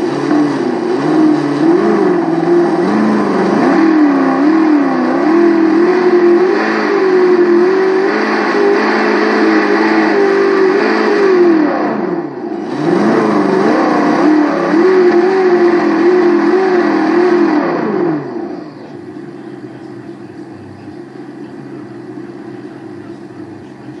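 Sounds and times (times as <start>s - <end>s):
synthetic engine revving: 0.0s - 24.0s
steady low hum: 17.9s - 24.0s.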